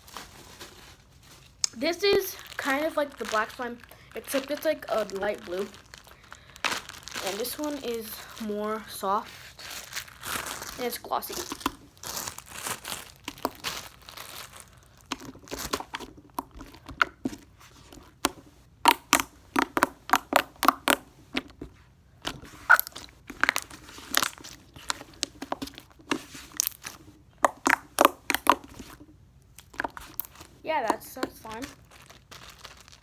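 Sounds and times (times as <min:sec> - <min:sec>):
wet clicks and pops: 0:01.6 - 0:01.8, 0:18.2 - 0:21.5, 0:27.4 - 0:28.8
slime squeezed by hand: 0:22.4 - 0:29.0.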